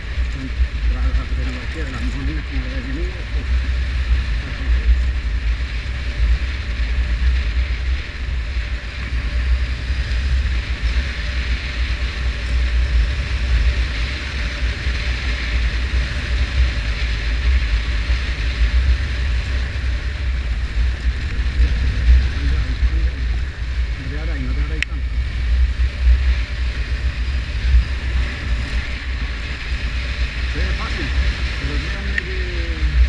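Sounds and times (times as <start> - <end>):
motorcycle engine running: 0.0 - 33.0
wind buffeting microphone: 0.0 - 33.0.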